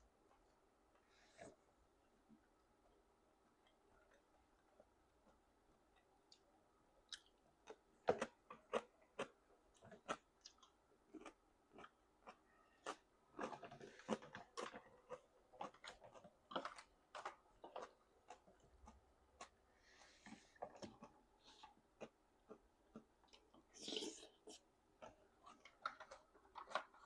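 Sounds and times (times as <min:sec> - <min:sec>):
person chewing noodles: 0:05.9 - 0:27.0.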